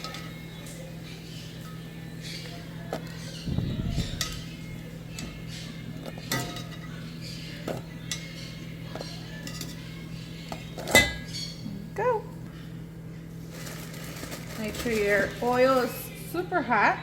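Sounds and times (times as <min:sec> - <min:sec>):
utensils clinking against pot: 0:00.0 - 0:11.6
steady low hum: 0:00.0 - 0:17.0.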